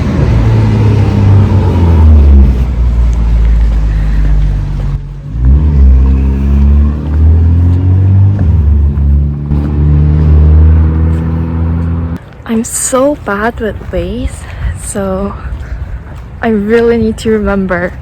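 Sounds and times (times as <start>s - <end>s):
vehicle engine revving: 0.0s - 12.2s.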